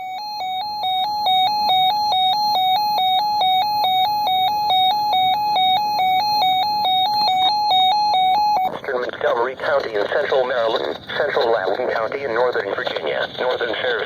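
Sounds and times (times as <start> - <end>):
weather radio alert alarm: 0.0 - 11.0.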